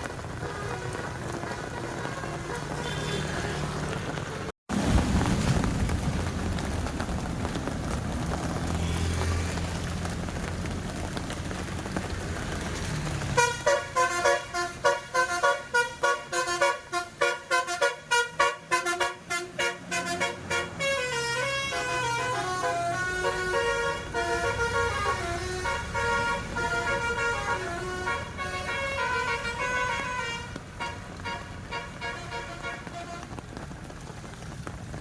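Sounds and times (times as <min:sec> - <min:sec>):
steady vehicle noise: 0:00.0 - 0:35.0
musical bus horn playing tune: 0:00.4 - 0:03.8, 0:13.4 - 0:33.4.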